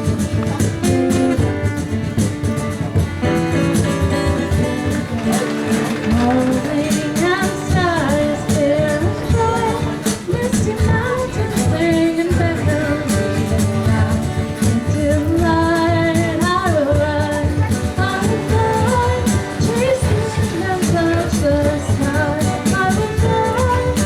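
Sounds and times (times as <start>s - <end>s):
guitar-led band: 0.0s - 24.0s
person singing: 5.3s - 24.0s.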